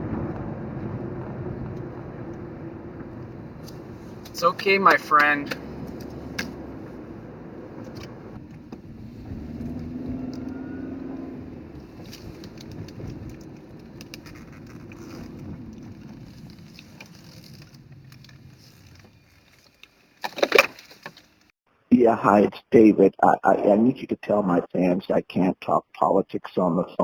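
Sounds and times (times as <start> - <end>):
low hum: 0.0 - 19.8
road and engine noise: 0.0 - 21.6.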